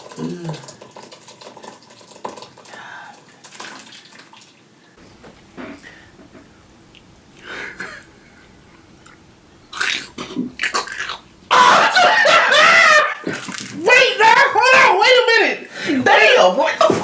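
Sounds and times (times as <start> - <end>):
person crying out in disgust: 11.5 - 13.2.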